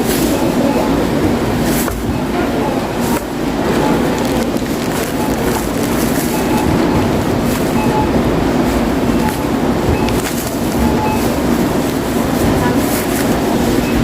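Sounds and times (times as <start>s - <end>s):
murmur of voices: 0.0s - 8.2s, 9.0s - 14.0s
short beeps: 6.3s - 7.1s, 7.7s - 8.2s, 9.1s - 11.4s.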